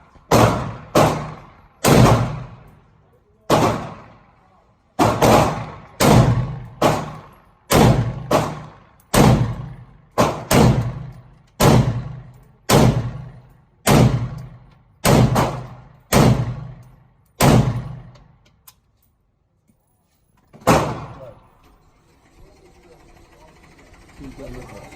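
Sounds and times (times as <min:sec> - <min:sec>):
gunshots with echo: 0:00.3 - 0:02.7, 0:03.5 - 0:04.2, 0:05.0 - 0:16.8, 0:17.4 - 0:18.1, 0:20.6 - 0:21.4.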